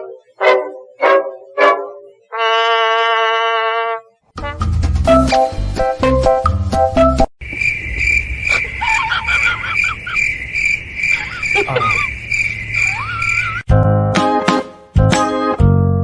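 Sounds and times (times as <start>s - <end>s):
music: 0.0s - 2.7s, 4.4s - 7.3s, 13.7s - 16.0s
insect chirping: 7.4s - 13.6s
short squeaky calls: 7.6s - 13.6s.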